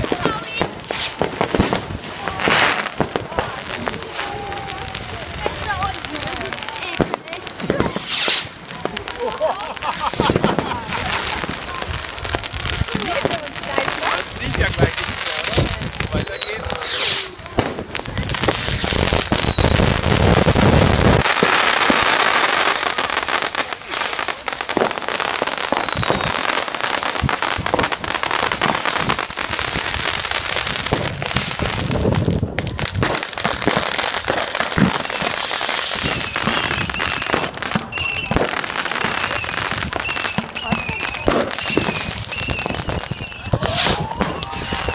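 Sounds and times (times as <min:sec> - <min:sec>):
fireworks bangs and crackles: 0:00.0 - 0:44.9
warbling firework whistles: 0:00.5 - 0:02.8, 0:07.8 - 0:08.6, 0:13.8 - 0:20.0, 0:24.6 - 0:26.5, 0:35.2 - 0:44.9
falling firework whistle: 0:00.6 - 0:02.8, 0:07.8 - 0:08.5, 0:13.9 - 0:21.3, 0:24.2 - 0:26.6, 0:33.6 - 0:44.9.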